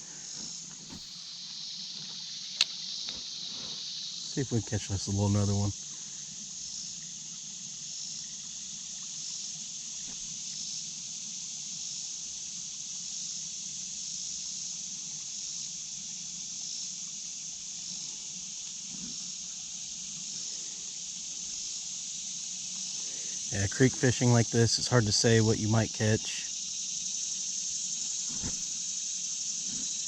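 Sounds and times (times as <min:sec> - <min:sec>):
high-pitched insect chorus: 0:00.0 - 0:30.0
creek water trickling: 0:00.7 - 0:10.4.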